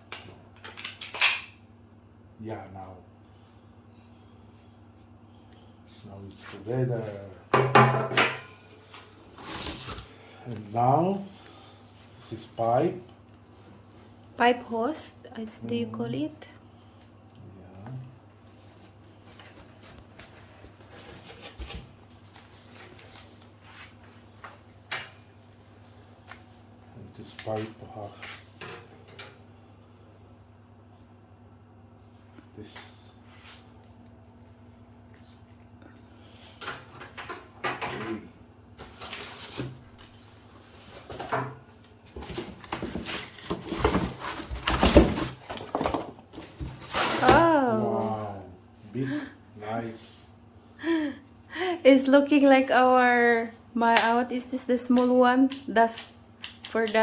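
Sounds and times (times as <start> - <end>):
low steady hum: 0.0 - 57.0
plastic packaging rustling: 9.3 - 10.2, 42.1 - 47.6.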